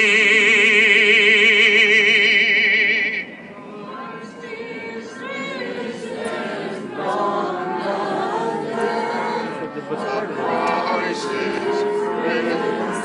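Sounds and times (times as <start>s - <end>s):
person singing with vibrato: 0.0s - 13.0s
overlapping voices: 4.8s - 13.0s.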